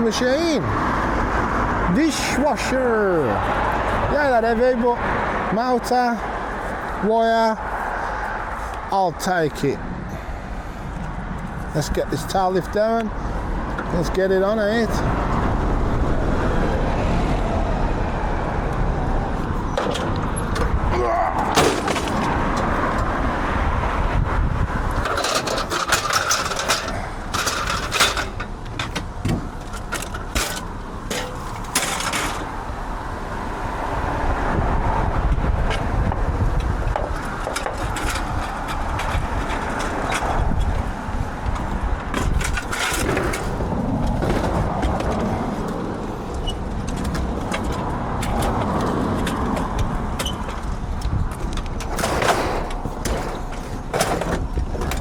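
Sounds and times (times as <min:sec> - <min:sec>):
vehicle running: 0:00.0 - 0:55.0
metal clanks and scrapes: 0:21.4 - 0:23.0, 0:24.9 - 0:32.5, 0:36.6 - 0:55.0.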